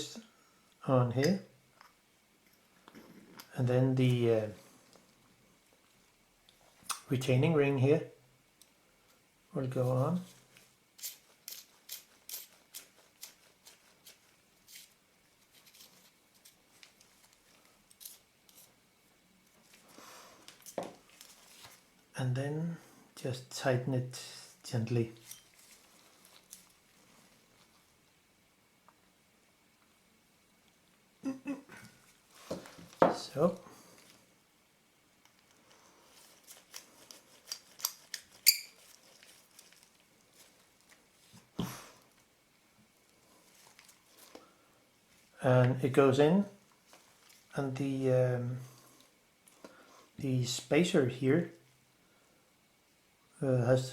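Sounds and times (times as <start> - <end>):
small metal clicks and scrapes: 11.0 - 18.8, 35.2 - 40.0
small metal parts clicking: 36.7 - 39.2.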